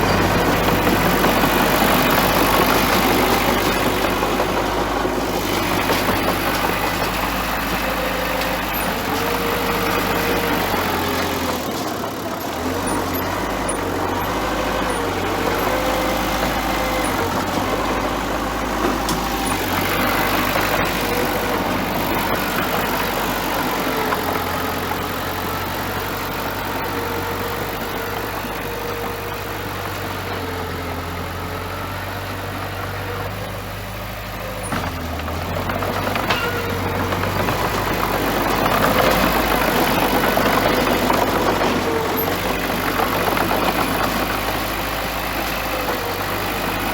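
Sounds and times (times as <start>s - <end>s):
bulldozer diesel engine running: 0.0s - 46.9s.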